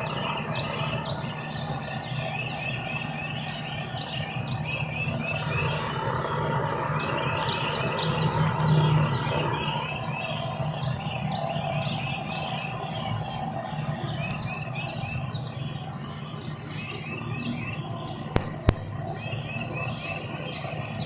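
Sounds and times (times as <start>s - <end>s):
small birds chirping: 0.0s - 21.0s
steady low hum: 0.0s - 21.0s
sharp clicks: 14.1s - 15.8s.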